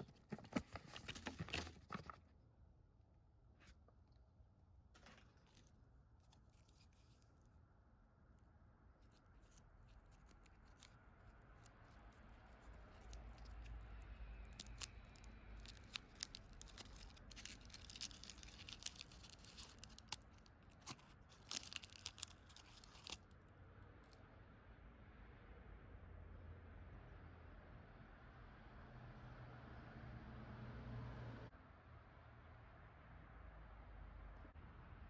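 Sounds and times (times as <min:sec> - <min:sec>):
packaging crinkling: 0:00.0 - 0:02.2, 0:14.4 - 0:23.2.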